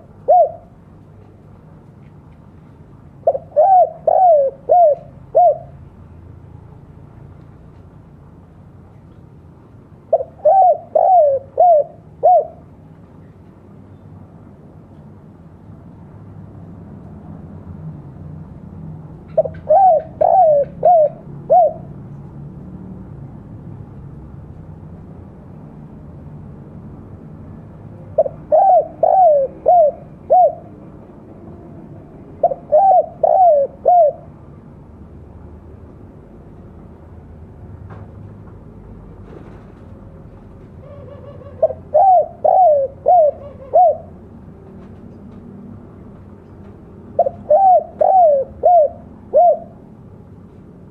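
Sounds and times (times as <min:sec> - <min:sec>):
dove cooing: 0:00.0 - 0:00.8, 0:03.2 - 0:05.9, 0:10.1 - 0:12.7, 0:19.4 - 0:22.0, 0:28.1 - 0:30.8, 0:32.4 - 0:34.3, 0:40.8 - 0:44.2, 0:47.1 - 0:49.8.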